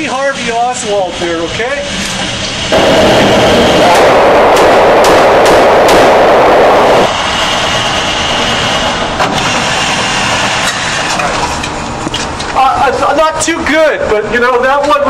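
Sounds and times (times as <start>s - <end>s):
steady low noise: 2.7s - 8.4s
loud noise: 2.7s - 11.2s.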